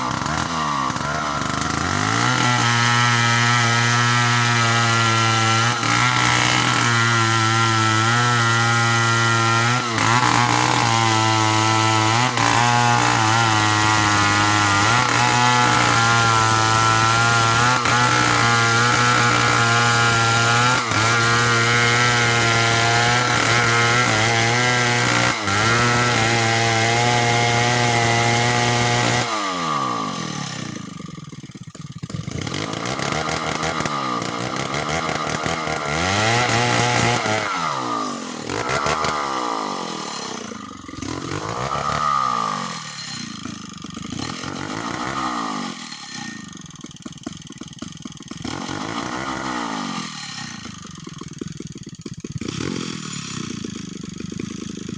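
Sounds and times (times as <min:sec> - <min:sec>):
chainsaw revving: 0:00.0 - 0:54.9.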